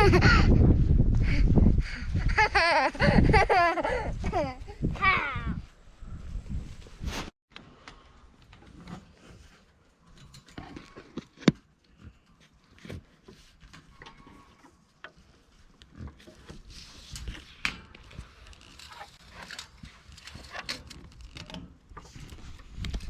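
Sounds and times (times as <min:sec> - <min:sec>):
small knocks and rustles: 0:07.9 - 0:23.0.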